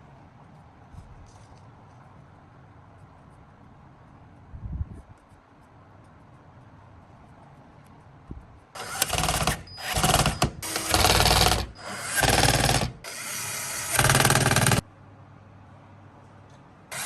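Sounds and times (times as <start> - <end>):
power screwdriver buzzing: 8.8 - 14.8.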